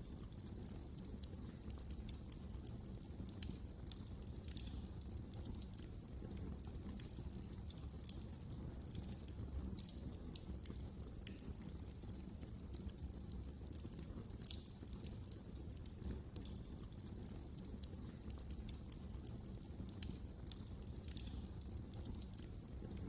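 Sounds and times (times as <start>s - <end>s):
wood fire crackling: 0.0s - 23.0s.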